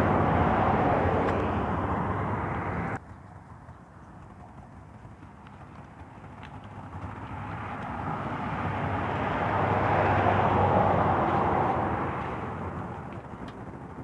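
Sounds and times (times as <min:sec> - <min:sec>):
vehicle passing: 0:00.0 - 0:03.0, 0:05.8 - 0:14.0.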